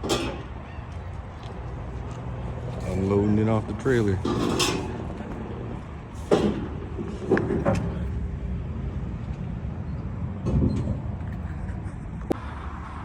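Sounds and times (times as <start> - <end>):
sharp knocks and clunks: 6.2 - 8.0.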